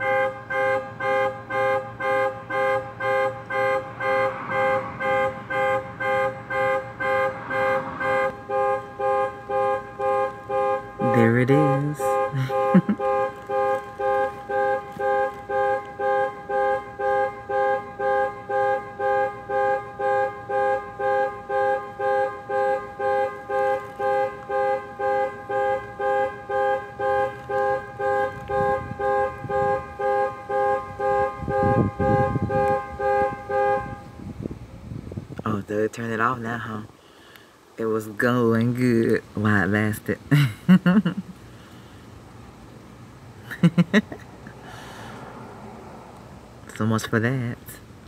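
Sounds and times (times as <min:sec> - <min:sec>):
car alarm horn honking: 0:00.0 - 0:34.3.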